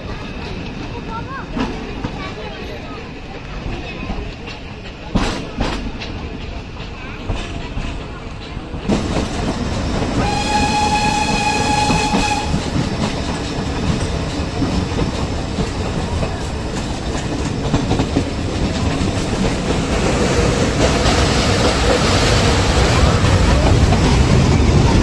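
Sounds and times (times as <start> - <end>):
train wheels rumbling on track: 0.0 - 25.0
train whistle: 10.2 - 12.8.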